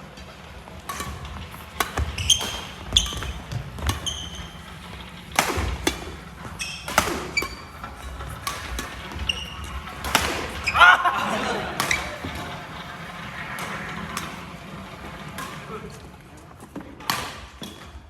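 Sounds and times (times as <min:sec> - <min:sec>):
racket striking shuttlecock: 0:00.8 - 0:12.6, 0:17.0 - 0:17.8
sneakers squeaking on wooden floor: 0:00.9 - 0:11.0
thudding footsteps: 0:01.1 - 0:10.6.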